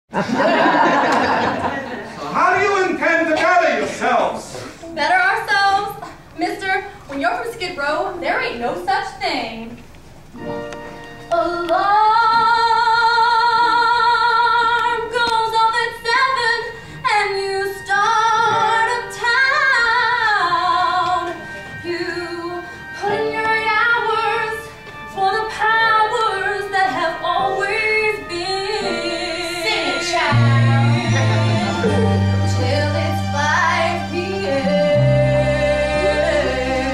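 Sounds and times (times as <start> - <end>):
women singing in harmony: 11.3 - 36.9
deep bass notes: 30.2 - 36.9.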